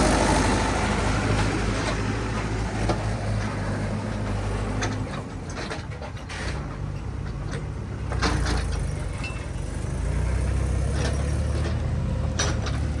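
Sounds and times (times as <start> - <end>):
heavy machinery diesel engine: 0.0 - 13.0
short clatters: 10.8 - 13.0.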